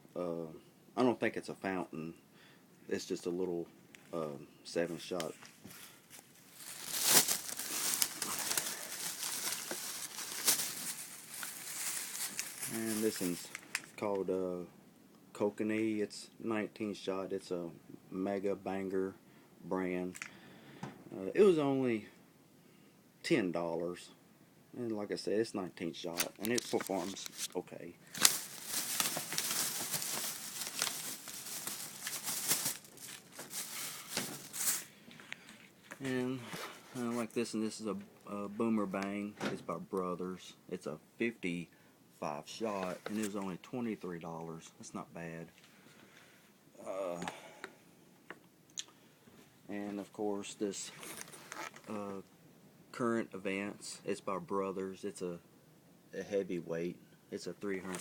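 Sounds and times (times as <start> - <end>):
plastic wrapping crinkling: 5.2 - 14.0, 26.1 - 37.4, 50.9 - 51.9, 57.7 - 58.0.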